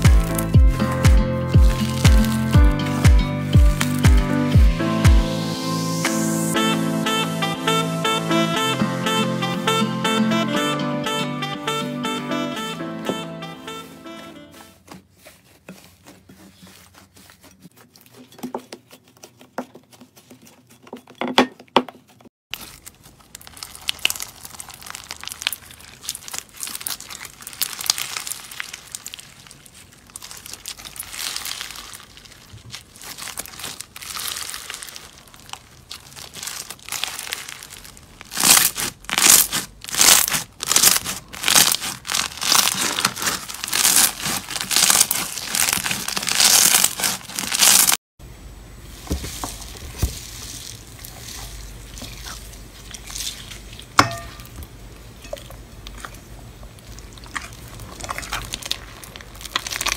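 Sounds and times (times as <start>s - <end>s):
slime squishing and crackling: 0.0s - 4.3s, 22.5s - 48.0s, 49.0s - 59.9s.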